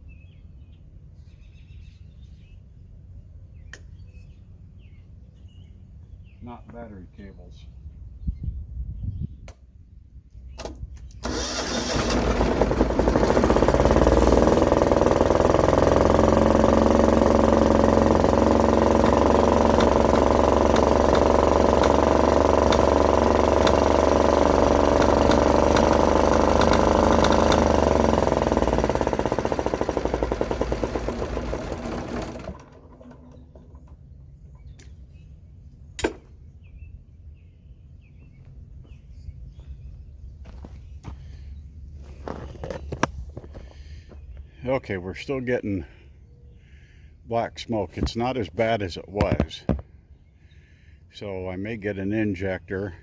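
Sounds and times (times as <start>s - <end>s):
diesel generator engine running: 11.1s - 35.6s.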